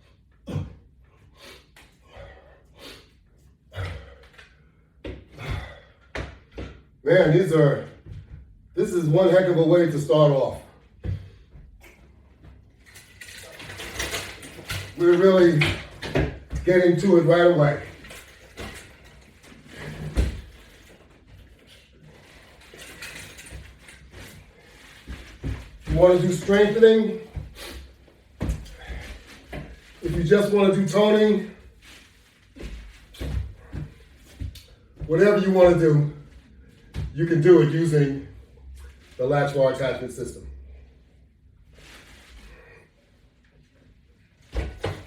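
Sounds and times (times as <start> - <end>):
man breathing hard: 0.6 - 6.2.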